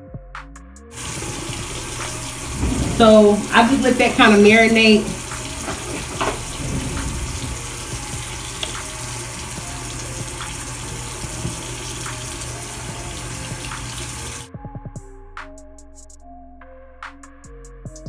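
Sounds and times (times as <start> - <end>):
tap running into a sink: 1.0 - 14.5.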